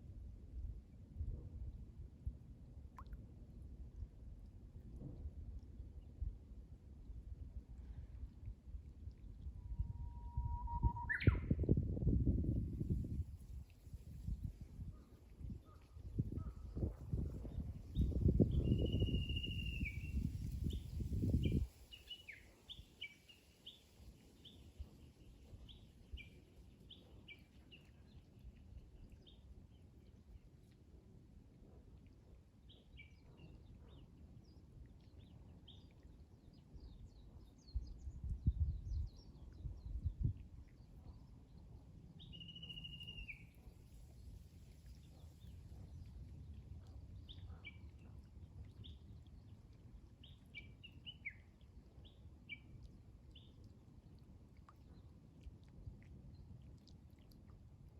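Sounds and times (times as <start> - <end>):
wind rumble on microphone: 0.0 - 23.2, 36.4 - 52.7
bush warbler singing: 18.0 - 23.1, 42.2 - 43.5.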